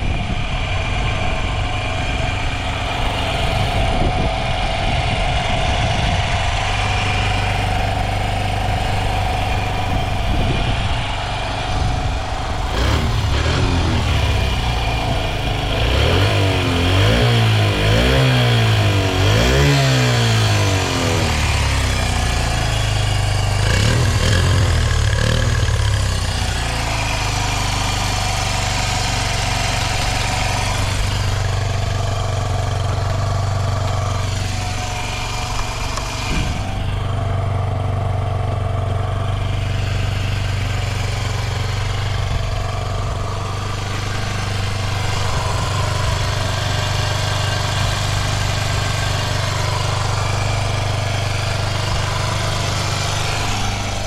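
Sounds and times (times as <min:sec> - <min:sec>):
small engine idling: 0:00.0 - 0:54.0.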